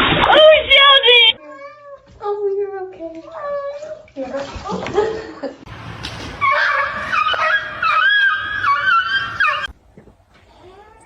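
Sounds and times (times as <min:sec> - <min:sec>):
dog whining: 0:06.4 - 0:09.7.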